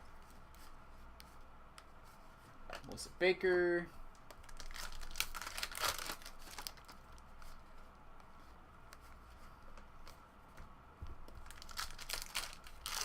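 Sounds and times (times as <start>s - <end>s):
cards and wrappers crinkling: 4.4s - 7.6s, 11.3s - 13.0s.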